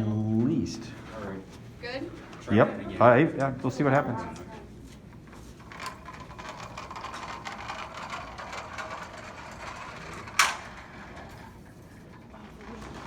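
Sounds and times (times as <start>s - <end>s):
mechanism clicking and rattling: 5.6s - 13.0s.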